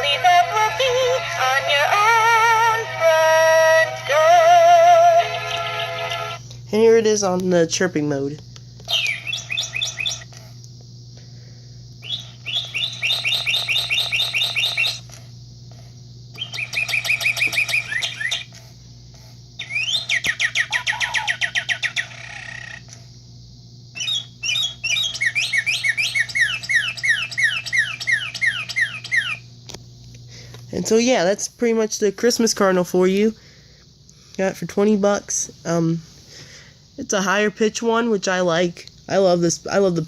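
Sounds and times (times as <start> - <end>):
toy bird chirps through speaker: 5.2 - 6.4, 8.9 - 10.3, 12.0 - 15.2, 16.4 - 18.5, 19.6 - 22.9, 23.9 - 29.4.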